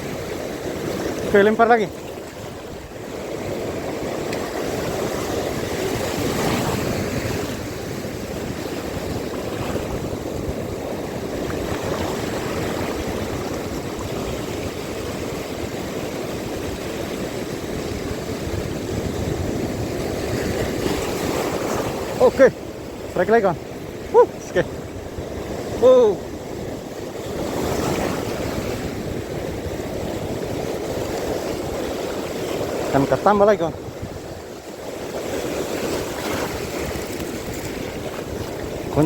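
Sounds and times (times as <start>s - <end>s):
wind on microphone: 0.0s - 39.0s
lapping water: 36.1s - 39.0s.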